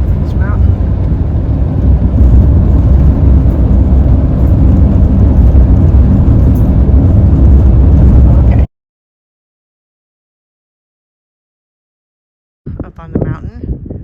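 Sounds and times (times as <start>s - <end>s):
loud low rumbling: 0.0s - 8.7s.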